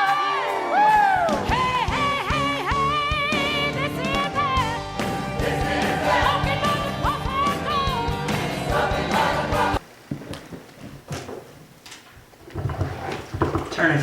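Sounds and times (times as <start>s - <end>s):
voices singing worship music: 0.0s - 9.8s.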